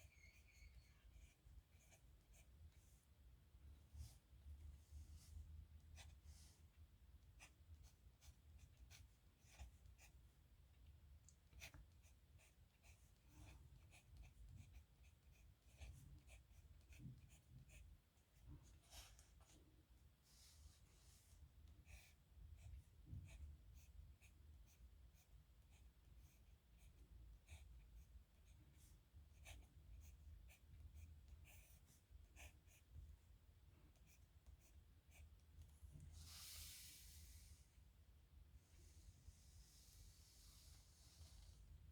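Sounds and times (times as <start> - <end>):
soft hiss: 35.6 - 41.9.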